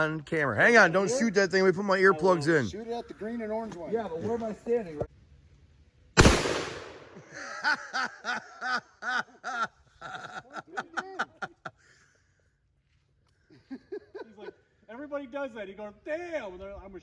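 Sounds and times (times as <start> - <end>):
revolver gunshot: 6.2 - 7.4
man laughing: 7.2 - 12.0, 13.5 - 14.7.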